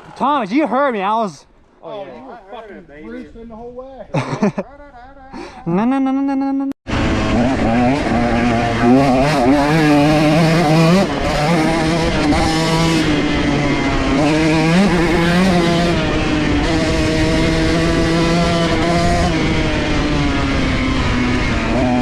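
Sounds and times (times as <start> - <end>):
dirt bike engine revving: 6.9 - 22.0.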